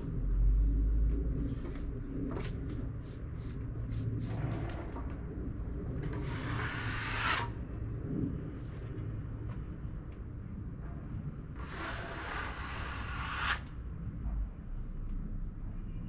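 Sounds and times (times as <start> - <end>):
scraping rush: 6.0 - 7.7, 11.6 - 13.8
sawmill engine running: 11.6 - 13.6.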